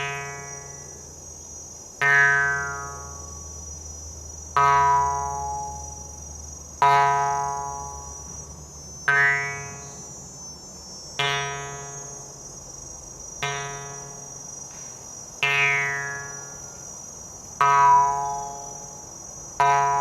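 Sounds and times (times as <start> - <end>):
faint high-pitched whine: 0.0 - 20.0
plucked string notes ringing: 4.6 - 6.0, 17.6 - 18.9, 19.6 - 20.0.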